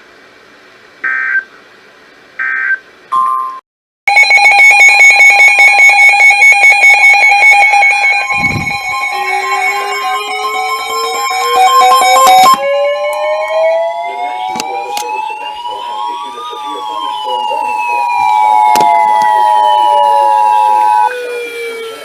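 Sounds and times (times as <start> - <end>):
digital data bursts: 4.1 - 12.6, 14.0 - 21.1
pulsing electronic alarm: 4.1 - 22.0.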